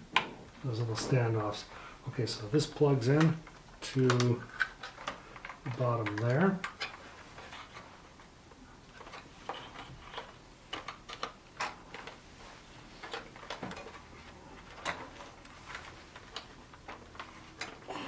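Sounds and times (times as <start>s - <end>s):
light clicks and taps: 3.1s - 7.0s.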